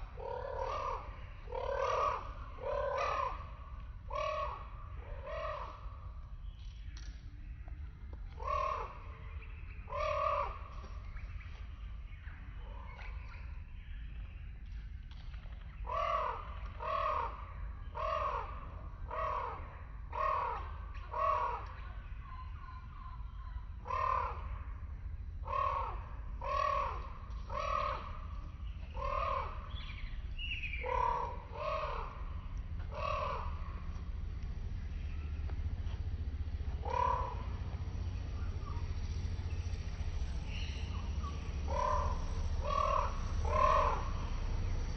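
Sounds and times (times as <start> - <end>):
bird calling: 0.0 - 14.3, 25.4 - 44.9
steady low rumble: 0.0 - 44.9.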